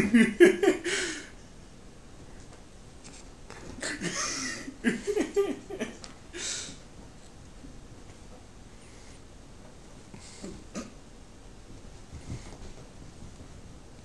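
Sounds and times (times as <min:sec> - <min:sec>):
person laughing softly: 0:03.7 - 0:06.8
breathy exhale: 0:06.3 - 0:06.8.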